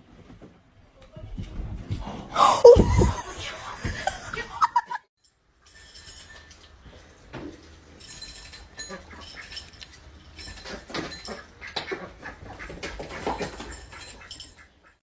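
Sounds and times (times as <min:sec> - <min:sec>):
person laughing: 0:02.4 - 0:05.1.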